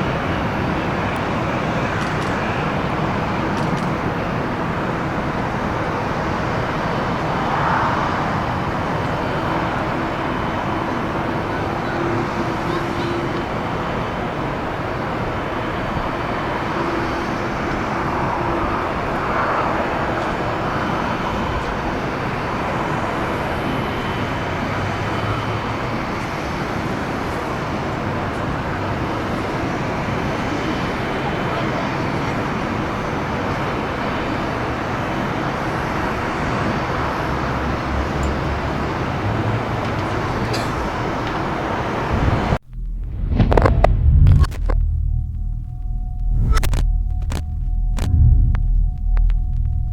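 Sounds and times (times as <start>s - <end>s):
jet engine rush: 0.0s - 24.3s, 42.0s - 49.9s.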